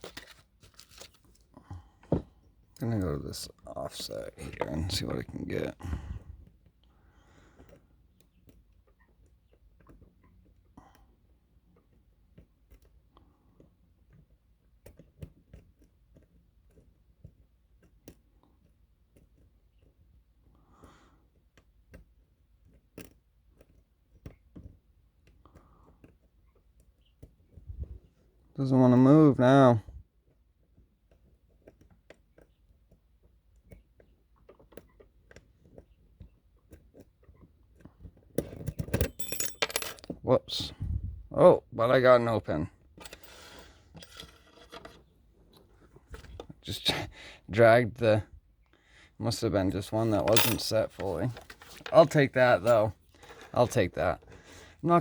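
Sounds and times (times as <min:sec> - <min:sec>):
lock pick clicking and scraping: 0:31.1 - 0:40.2, 0:42.8 - 0:46.5.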